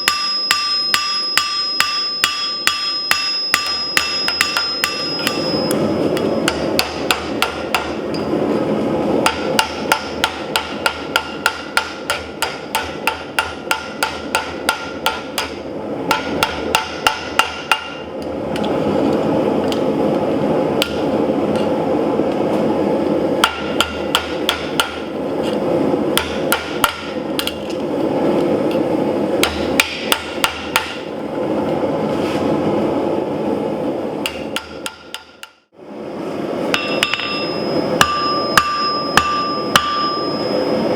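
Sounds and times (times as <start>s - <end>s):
hammer ringing on anvil: 0.0s - 8.3s, 9.3s - 18.1s, 36.8s - 40.9s.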